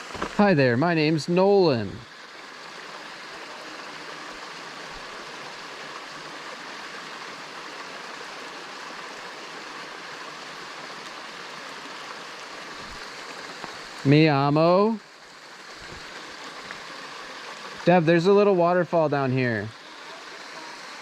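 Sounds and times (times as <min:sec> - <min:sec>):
water rushing from small waterfall: 0:00.0 - 0:21.0.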